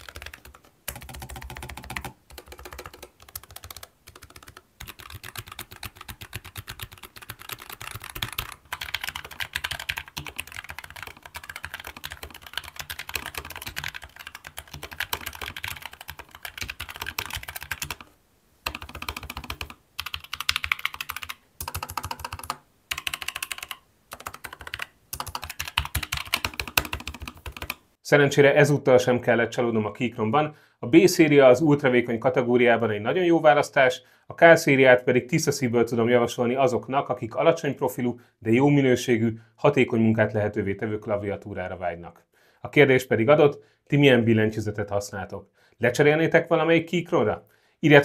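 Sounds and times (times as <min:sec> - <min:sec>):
fast typing on mechanical keyboard: 0:00.0 - 0:27.8.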